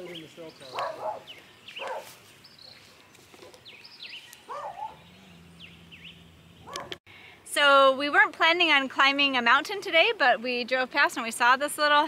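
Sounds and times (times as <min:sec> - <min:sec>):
birds chirping: 0:00.0 - 0:07.1.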